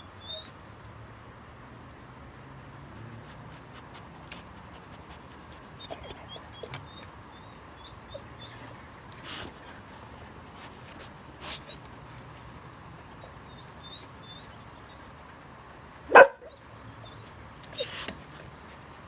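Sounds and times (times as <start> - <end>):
dog whimpering: 0.0 - 0.6, 5.8 - 8.6, 13.2 - 15.0, 16.1 - 18.1.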